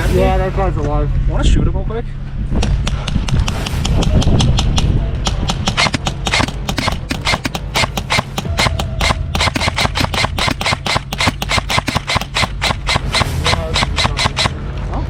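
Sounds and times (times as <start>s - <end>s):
airsoft guns firing rapid pops: 2.8s - 14.6s.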